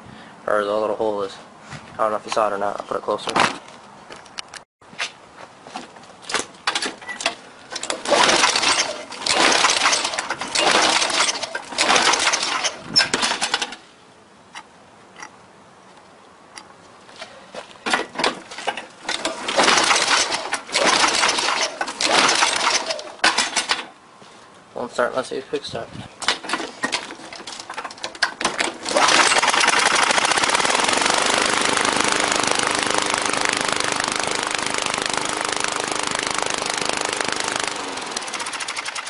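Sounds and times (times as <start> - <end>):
lawn mower engine cranking: 6.3 - 13.9, 17.8 - 24.0, 26.2 - 39.0.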